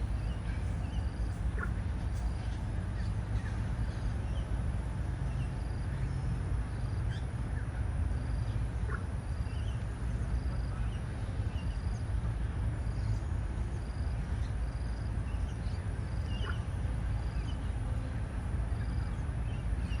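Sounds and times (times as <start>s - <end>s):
steady low rumble: 0.0s - 20.0s.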